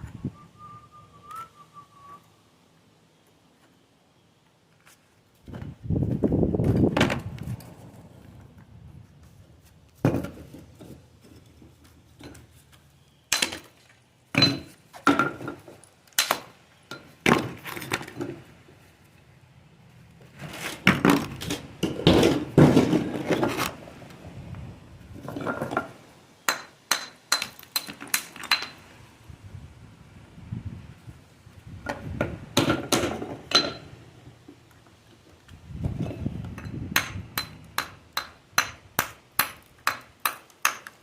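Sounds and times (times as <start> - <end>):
metal tools striking stone: 26.5 - 28.8, 36.6 - 40.9.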